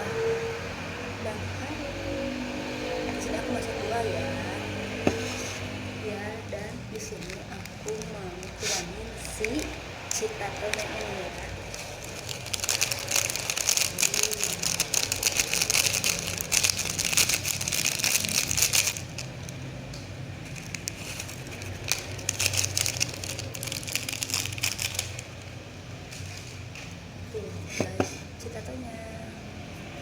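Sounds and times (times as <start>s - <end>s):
plastic snack sachet crinkling: 6.9s - 19.7s, 20.4s - 25.5s.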